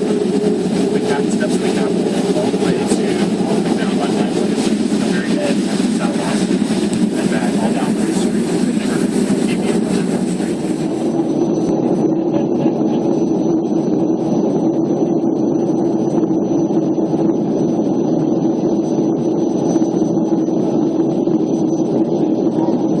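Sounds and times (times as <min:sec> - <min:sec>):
rushing air: 0:00.0 - 0:11.7
jet engine roar in cabin: 0:00.0 - 0:23.0
steady hum: 0:00.0 - 0:23.0.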